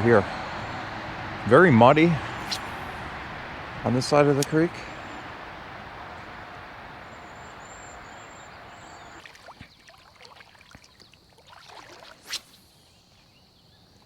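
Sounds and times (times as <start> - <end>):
creek water rushing: 0.0 - 10.9.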